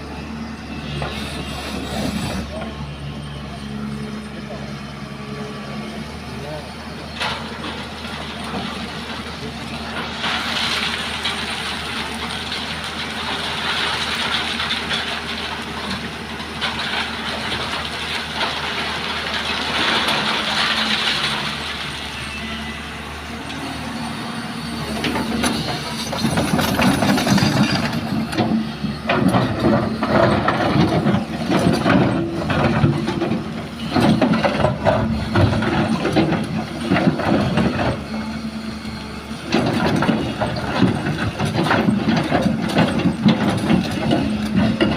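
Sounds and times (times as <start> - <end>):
excavator diesel engine: 0.0 - 44.9.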